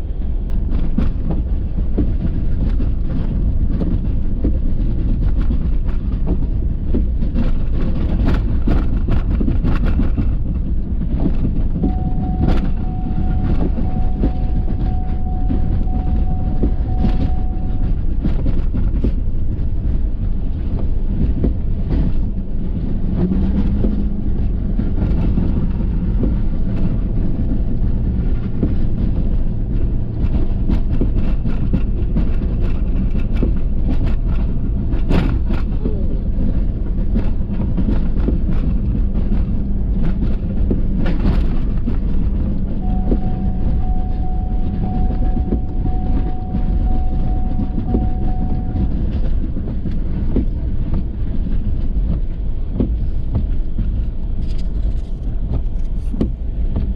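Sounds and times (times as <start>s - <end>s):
knocks and rattles: 0.5s - 56.9s
thin steady whine: 9.8s - 20.9s, 40.1s - 51.0s.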